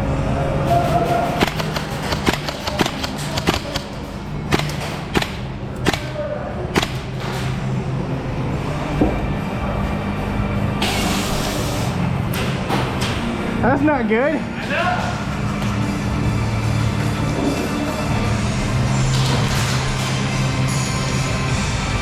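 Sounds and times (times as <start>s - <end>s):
background music: 0.0s - 11.0s, 11.7s - 22.0s
airsoft gun shots: 1.4s - 7.3s.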